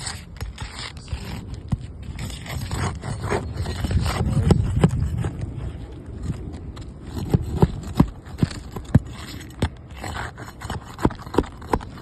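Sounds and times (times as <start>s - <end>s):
scraping on shingle roof: 0.0s - 12.0s
sharp taps on shingles: 6.2s - 12.0s.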